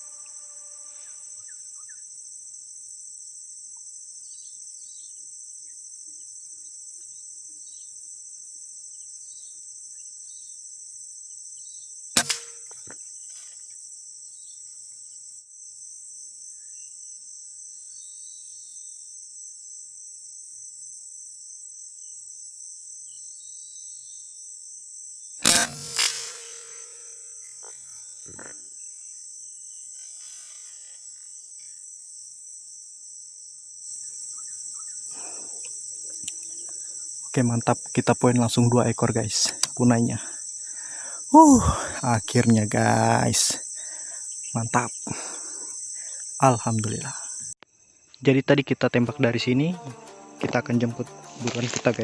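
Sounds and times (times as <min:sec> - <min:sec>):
insects droning: 0:00.0 - 0:52.0
air rifle shots: 0:12.2 - 0:12.8, 0:25.4 - 0:27.4.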